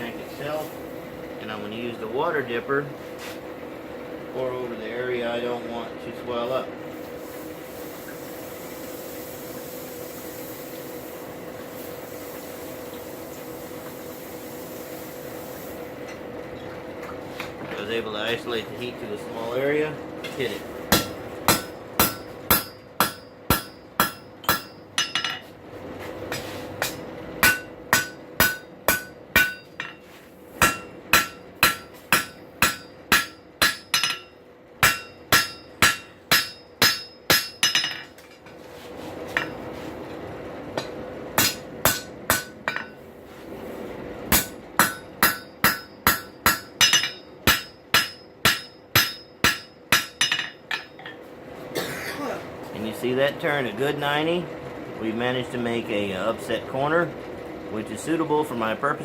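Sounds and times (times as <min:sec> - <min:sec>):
hammer ringing on anvil: 0:20.9 - 0:25.4, 0:26.8 - 0:30.0, 0:30.6 - 0:38.1, 0:40.8 - 0:43.0, 0:44.3 - 0:51.1.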